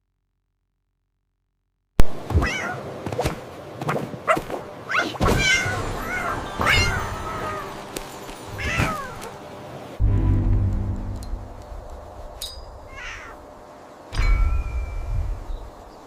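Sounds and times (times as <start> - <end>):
cat meowing: 2.4 - 2.8, 4.9 - 7.8, 8.6 - 9.3, 12.9 - 13.4.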